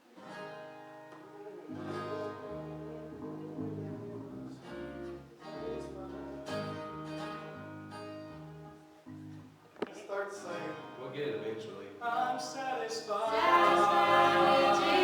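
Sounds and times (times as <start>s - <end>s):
guitar chords strummed: 1.7s - 9.6s.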